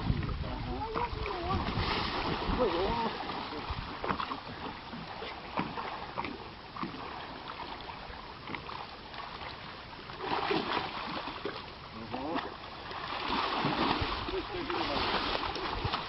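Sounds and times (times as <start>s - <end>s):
water lapping around boat: 0.0s - 16.0s.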